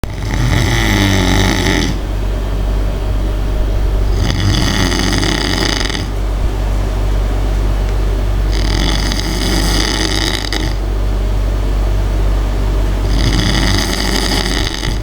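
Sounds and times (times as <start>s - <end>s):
person snoring: 0.0s - 2.0s, 4.1s - 6.1s, 8.5s - 10.8s, 13.0s - 15.0s
steady low hum: 0.0s - 15.0s.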